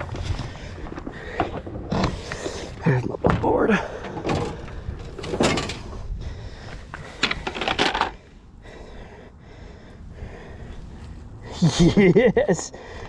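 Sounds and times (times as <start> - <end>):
knocks and rattles on board: 7.1 - 8.2.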